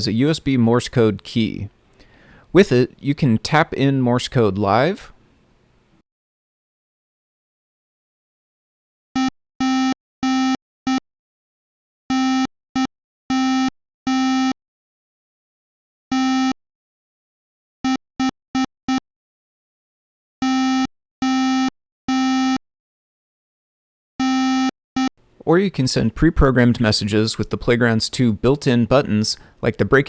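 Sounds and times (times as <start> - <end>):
morse code beeps: 9.2 - 11.0, 12.1 - 14.6, 16.1 - 16.6, 20.4 - 22.6, 24.2 - 25.1.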